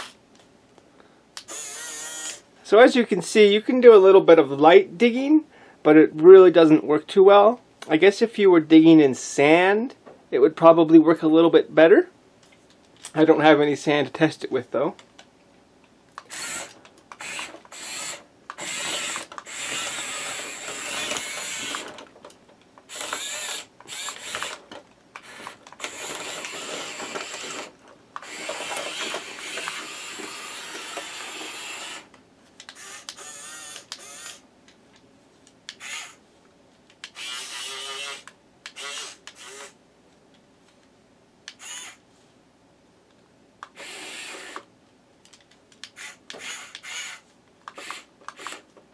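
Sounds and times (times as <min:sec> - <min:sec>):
toy excavator motors whirring: 0:01.4 - 0:02.4, 0:16.2 - 0:22.1, 0:22.9 - 0:34.4, 0:35.7 - 0:36.2, 0:37.0 - 0:39.8, 0:41.5 - 0:42.0, 0:43.6 - 0:44.7, 0:45.8 - 0:48.7
plastic gears skipping: 0:16.2 - 0:34.4.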